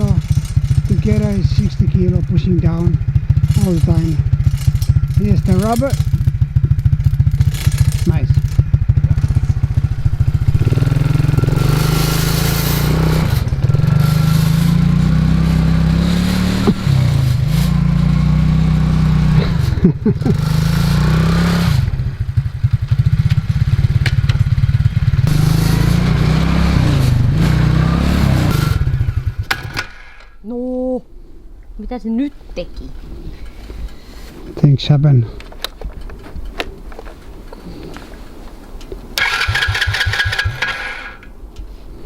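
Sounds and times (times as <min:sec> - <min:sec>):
snow plow scraping: 0:00.0 - 0:30.1
atv engine revving: 0:00.0 - 0:30.2, 0:39.2 - 0:41.3.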